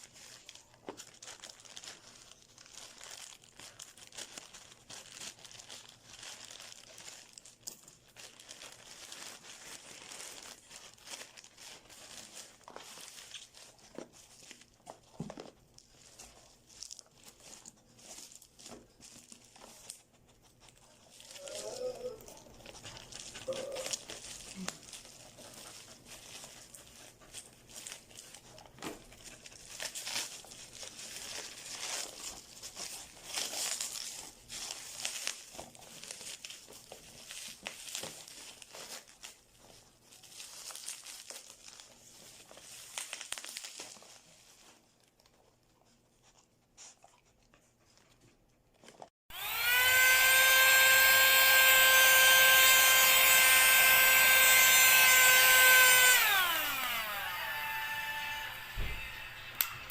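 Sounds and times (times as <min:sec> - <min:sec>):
crinkling and rustling: 0:00.0 - 0:49.2
handheld vacuum cleaner whine: 0:49.3 - 0:59.9.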